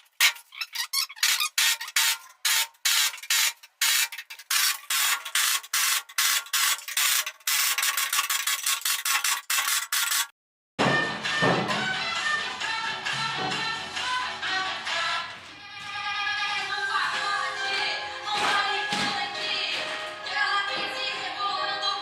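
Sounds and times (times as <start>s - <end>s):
hand scraping an engine part: 0.0s - 10.3s.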